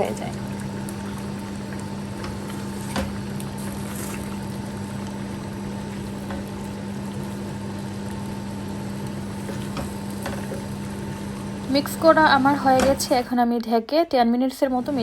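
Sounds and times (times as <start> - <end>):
food being stirred in a pot: 0.0 - 13.2.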